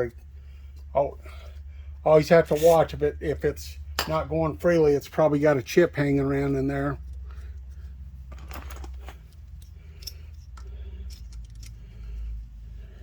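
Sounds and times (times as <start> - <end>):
low steady hum: 0.0 - 13.0
metallic clicks and clinks: 8.3 - 12.2.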